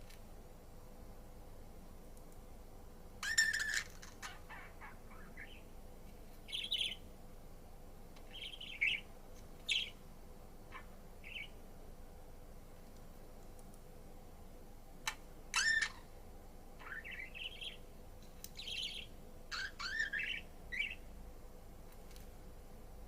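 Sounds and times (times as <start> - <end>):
budgerigar chirping and squawking: 3.2 - 5.6, 10.7 - 11.5, 15.5 - 16.1, 16.8 - 17.8, 18.6 - 21.0.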